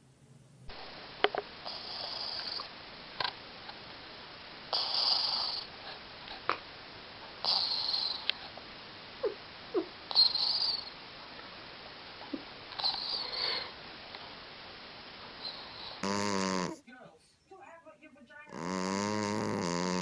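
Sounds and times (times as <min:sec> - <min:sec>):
cat snoring: 0:01.6 - 0:02.7, 0:04.7 - 0:06.0, 0:07.4 - 0:08.5, 0:09.2 - 0:11.0, 0:12.7 - 0:13.8, 0:15.4 - 0:16.8, 0:18.5 - 0:20.0.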